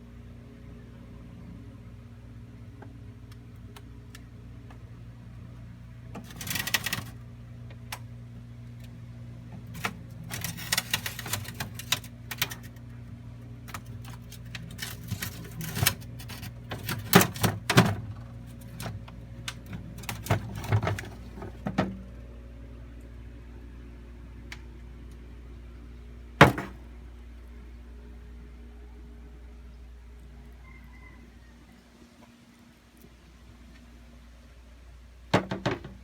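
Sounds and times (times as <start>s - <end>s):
steady low hum: 0.0s - 30.6s
objects clicking and clattering: 6.2s - 7.2s, 9.8s - 12.8s, 13.7s - 22.0s.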